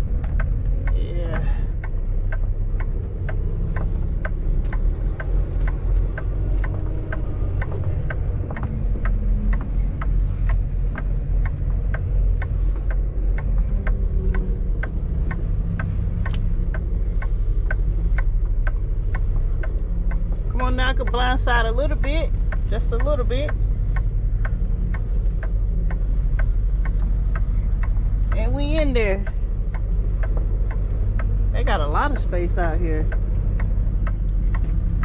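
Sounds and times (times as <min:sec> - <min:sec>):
diesel truck engine rumbling: 0:00.0 - 0:35.0.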